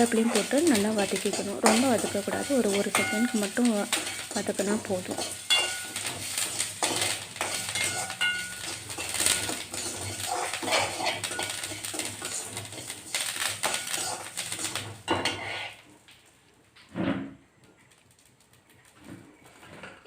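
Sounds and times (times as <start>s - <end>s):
spoon scraping and clinking in pan: 0.0s - 15.8s.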